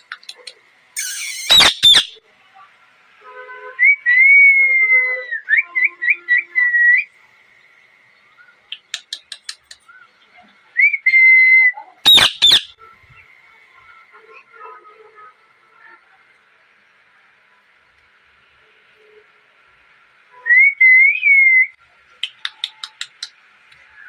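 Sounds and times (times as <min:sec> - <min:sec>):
parakeet screeching: 0:01.0 - 0:02.2, 0:12.0 - 0:12.8
parakeet whistling: 0:01.0 - 0:02.2, 0:12.0 - 0:12.8.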